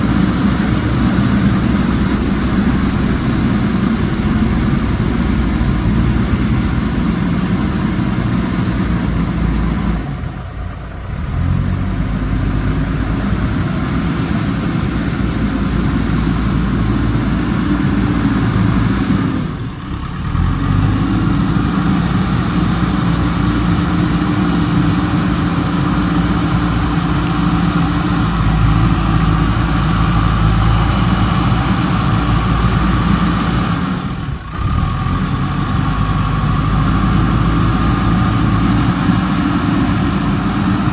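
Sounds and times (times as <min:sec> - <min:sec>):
diesel engines running: 0:00.0 - 0:40.9.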